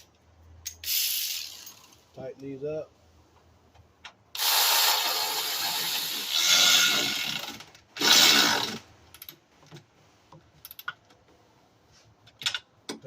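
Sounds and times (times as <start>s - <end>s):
power ratchet running bolts: 4.4s - 9.3s.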